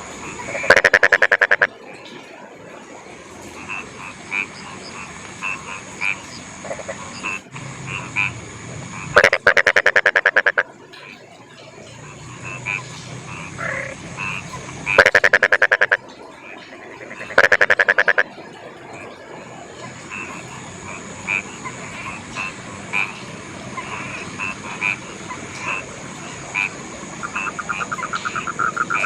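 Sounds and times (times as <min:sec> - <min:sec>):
frogs croaking: 0:00.0 - 0:29.0
rain hiss: 0:00.0 - 0:29.0.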